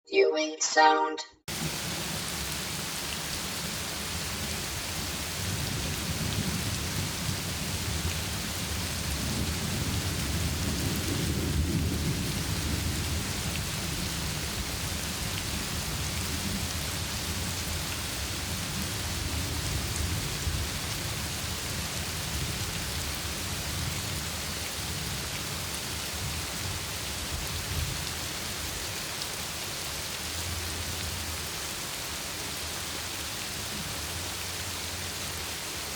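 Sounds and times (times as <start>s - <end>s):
heavy rain: 1.5s - 35.9s
rolling thunder: 9.1s - 14.0s.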